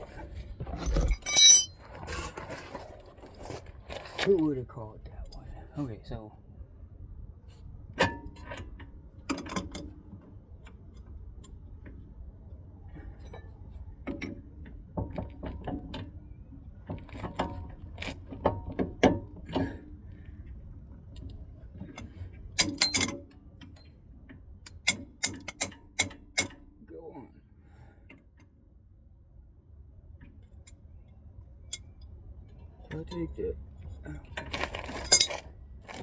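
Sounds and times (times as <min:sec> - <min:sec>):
metal tools clinking and clicking: 0:01.0 - 0:01.7, 0:34.6 - 0:35.4.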